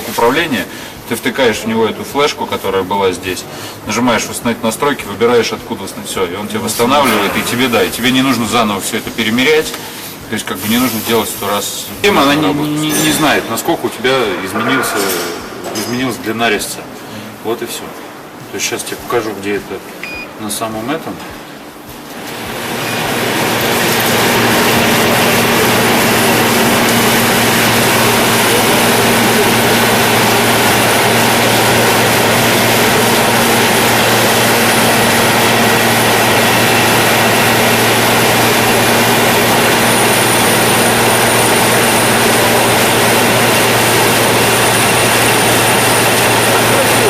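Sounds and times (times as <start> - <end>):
heavy machine running: 6.9 - 8.7, 12.0 - 16.6, 22.2 - 47.0.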